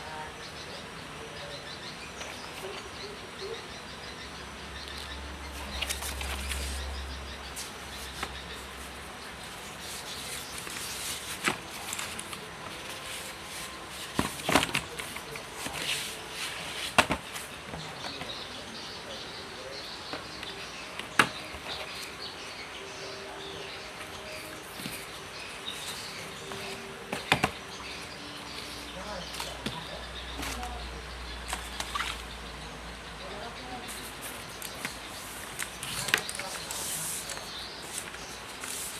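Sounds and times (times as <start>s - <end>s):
steady hiss: 30.4s - 38.9s.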